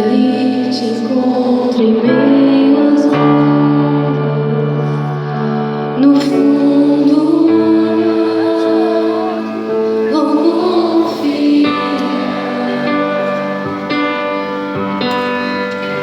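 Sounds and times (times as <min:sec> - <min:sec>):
worship song singing: 0:00.0 - 0:16.0
held instrumental chords: 0:05.4 - 0:16.0.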